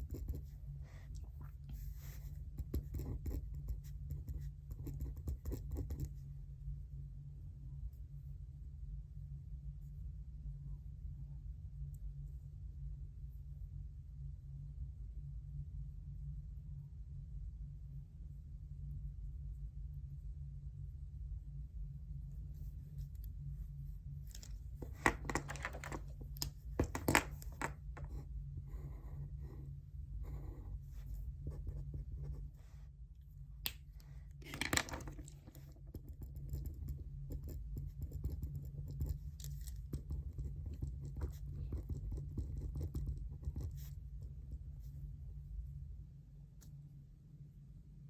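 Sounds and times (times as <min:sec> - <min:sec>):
pen scratching on paper: 0:00.0 - 0:01.1, 0:01.7 - 0:06.2, 0:35.6 - 0:44.1
steady low hum: 0:00.0 - 0:48.0.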